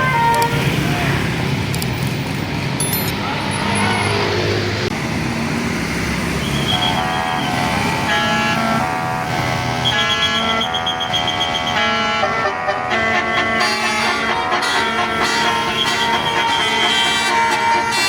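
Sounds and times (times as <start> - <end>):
bus melody horn playing chords: 0.0 - 0.8, 6.7 - 18.0.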